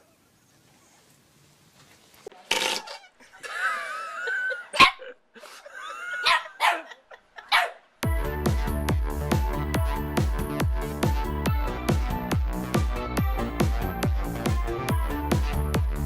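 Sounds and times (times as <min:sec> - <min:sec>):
dog barking and yipping: 0:06.2 - 0:07.8.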